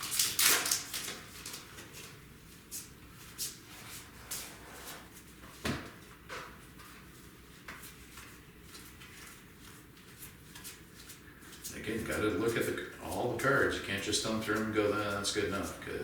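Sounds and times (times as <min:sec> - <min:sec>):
wrapper rustling: 0:00.0 - 0:02.2.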